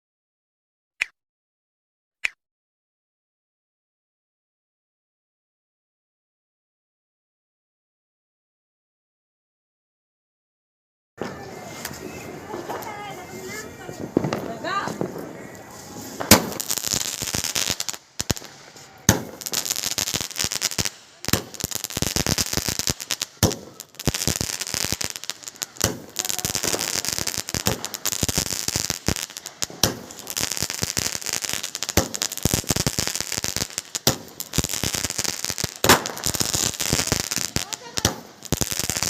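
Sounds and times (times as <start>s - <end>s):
fireworks bangs: 11.2s - 39.0s
fireworks crackling: 11.2s - 39.0s.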